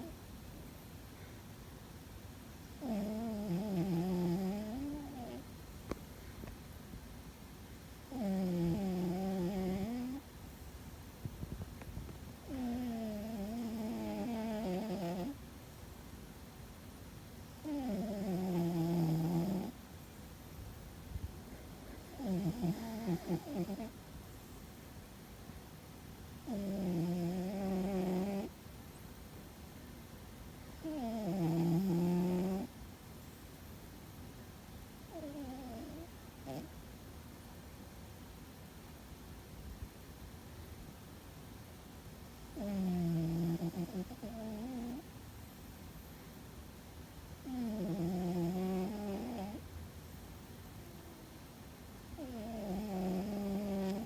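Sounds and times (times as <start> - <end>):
cat snoring: 2.8 - 5.4, 8.1 - 10.2, 12.4 - 15.4, 17.6 - 19.8, 21.9 - 24.0, 26.4 - 28.5, 30.8 - 32.7, 35.1 - 36.7, 42.5 - 45.0, 47.4 - 49.6, 52.2 - 54.0.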